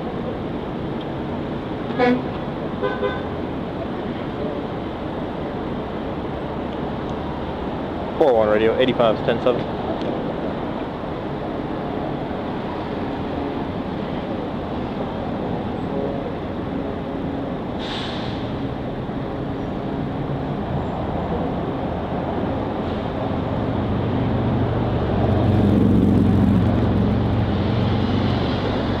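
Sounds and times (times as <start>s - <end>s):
traffic rumble: 0.0s - 29.0s
short hiss: 17.8s - 18.6s
vehicle passing close: 23.3s - 29.0s.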